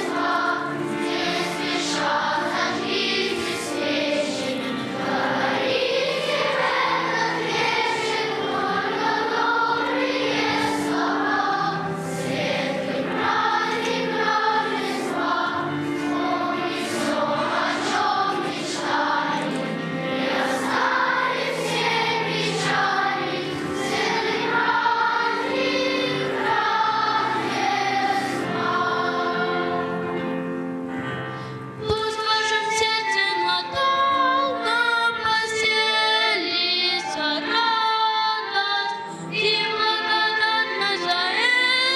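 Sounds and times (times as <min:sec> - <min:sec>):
choir singing: 0:00.0 - 0:30.6
musical accompaniment: 0:00.0 - 0:41.9.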